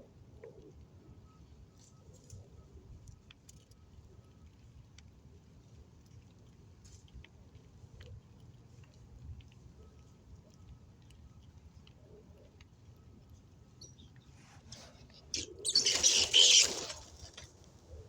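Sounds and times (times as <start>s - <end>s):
ground squirrels scuffling: 6.0s - 18.0s.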